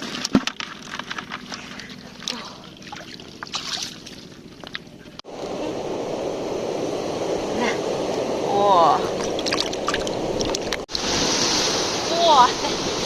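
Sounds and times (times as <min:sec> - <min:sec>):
rushing water: 0:05.3 - 0:13.0.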